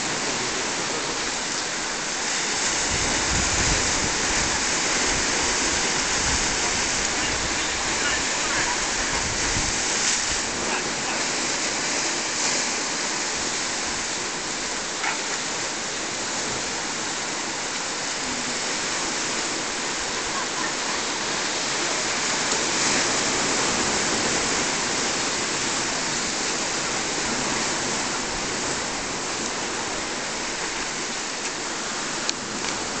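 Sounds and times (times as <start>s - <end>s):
rough sea surf on rocks: 0.0s - 33.0s.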